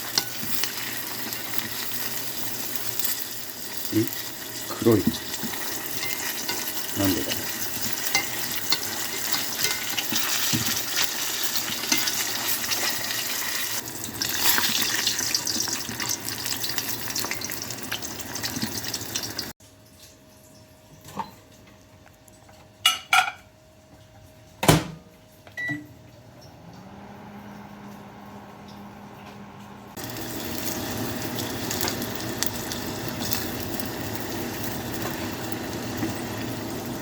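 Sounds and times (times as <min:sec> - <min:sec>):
kitchen utensils clinking: 0:00.0 - 0:19.5, 0:22.8 - 0:23.5, 0:30.0 - 0:37.0
oil sizzling and crackling: 0:00.0 - 0:19.6, 0:29.9 - 0:37.0.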